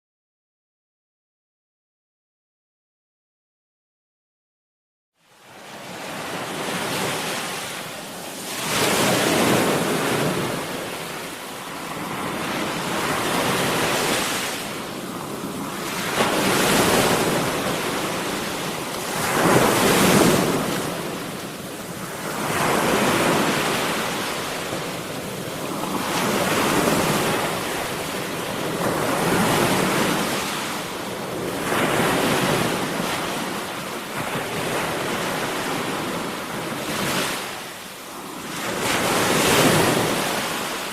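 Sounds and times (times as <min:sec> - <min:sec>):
sea waves breaking on shore: 0:05.2 - 0:40.9
wind on microphone: 0:08.4 - 0:37.2.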